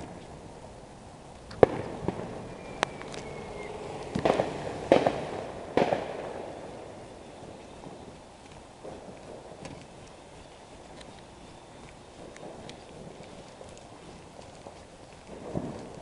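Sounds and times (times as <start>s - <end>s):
fireworks banging: 1.5s - 8.2s, 8.8s - 9.8s, 12.1s - 13.3s, 15.3s - 16.0s
fireworks crackling bursts: 1.5s - 11.2s, 12.1s - 16.0s
faint high whistle: 2.3s - 4.9s.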